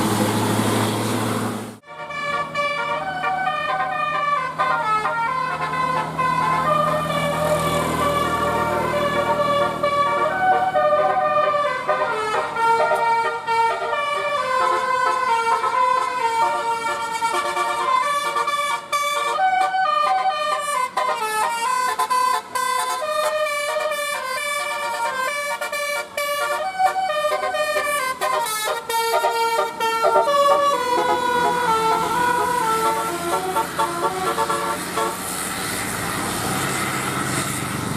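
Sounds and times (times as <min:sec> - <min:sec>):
bus air horns playing a tune: 0:01.8 - 0:35.9.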